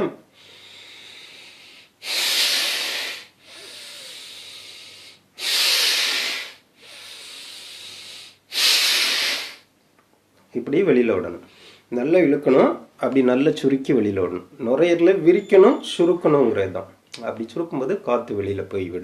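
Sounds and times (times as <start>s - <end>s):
man inhaling: 0.3s - 9.7s, 11.5s - 11.9s
man exhaling forcefully: 0.4s - 9.7s.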